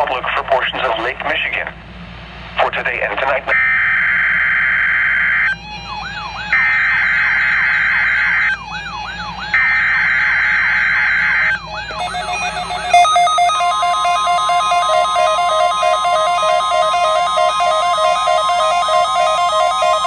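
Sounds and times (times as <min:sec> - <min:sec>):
siren sweeping up and down: 0:09.6 - 0:20.0
screechy buzzing data tones: 0:09.8 - 0:20.0
steady tone: 0:11.9 - 0:20.0
stepped electronic tones: 0:11.9 - 0:20.0.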